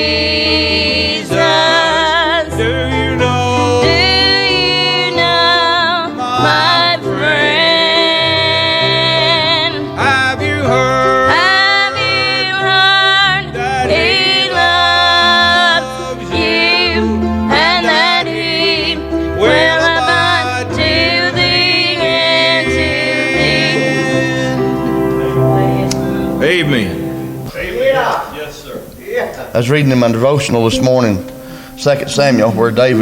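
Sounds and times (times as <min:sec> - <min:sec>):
person singing with vibrato: 0:00.0 - 0:28.0
country gospel song with band: 0:00.0 - 0:28.9.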